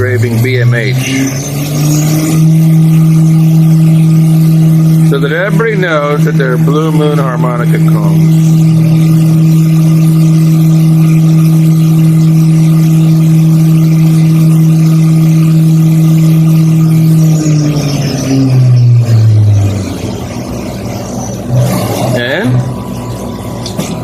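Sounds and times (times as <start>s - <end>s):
milling machine spindle whine: 0.0s - 24.0s.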